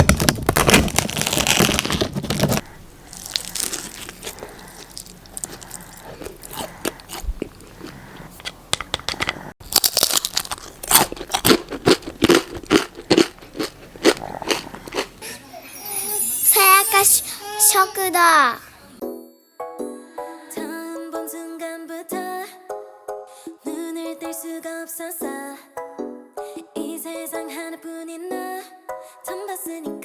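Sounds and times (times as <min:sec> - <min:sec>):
crunchy crust being chewed: 0:00.0 - 0:15.2.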